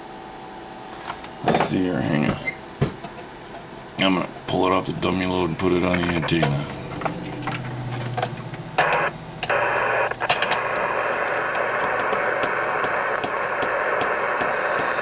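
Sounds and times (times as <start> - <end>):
radio static hiss: 3.9 - 15.0
clicks: 5.8 - 15.0.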